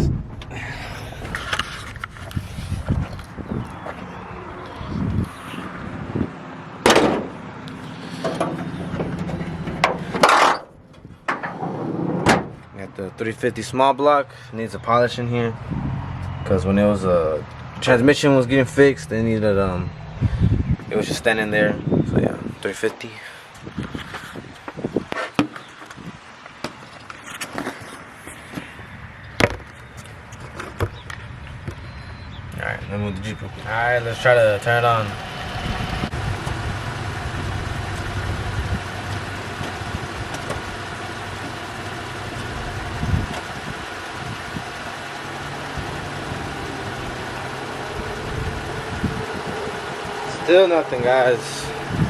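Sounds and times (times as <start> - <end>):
metal knocks and clanks: 6.8 - 7.4, 8.2 - 12.6.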